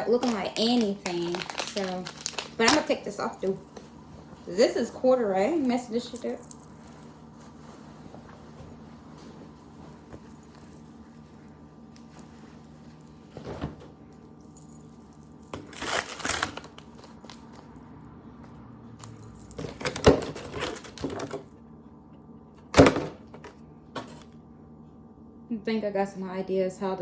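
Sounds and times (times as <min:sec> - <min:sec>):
low room hum: 0:00.0 - 0:27.0
jangling metallic clinks: 0:16.9 - 0:21.6.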